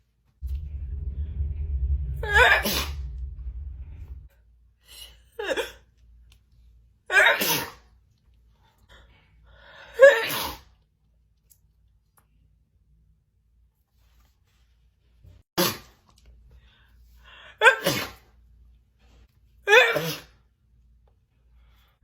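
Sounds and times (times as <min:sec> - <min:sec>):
woman sneezing: 0:07.1 - 0:07.8, 0:10.0 - 0:10.6, 0:17.6 - 0:18.2, 0:19.7 - 0:20.3.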